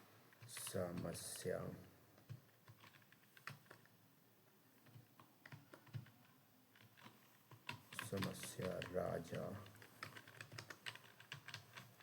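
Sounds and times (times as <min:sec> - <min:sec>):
computer keyboard typing: 0:02.2 - 0:03.9, 0:04.8 - 0:12.0.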